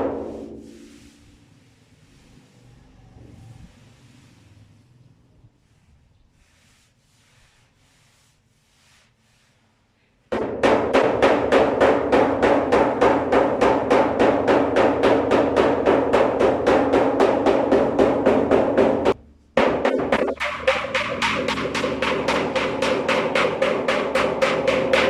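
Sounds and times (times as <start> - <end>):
music with fast drum beat: 19.7 - 25.0.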